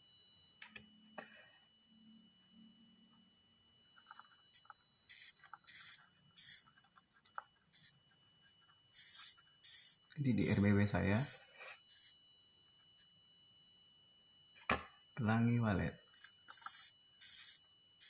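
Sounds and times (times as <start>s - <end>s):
faint steady hum: 0.0s - 18.0s
bird chicks chirping: 4.1s - 6.7s, 7.7s - 12.2s, 13.0s - 13.2s, 16.1s - 17.6s.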